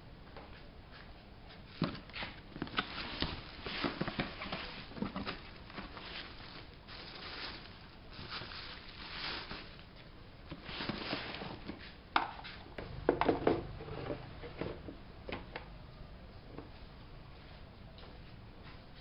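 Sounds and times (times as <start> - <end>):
objects knocking on hard surface: 13.0 - 13.7.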